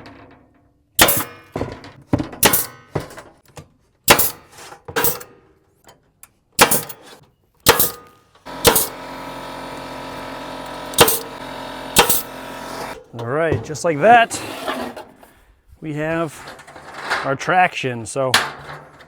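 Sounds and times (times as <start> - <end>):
staple gun strikes: 1.0 - 1.4, 2.4 - 2.8, 4.1 - 4.4, 6.6 - 7.0, 7.7 - 9.0, 11.0 - 11.4, 12.0 - 12.3
steady hum: 8.5 - 13.0.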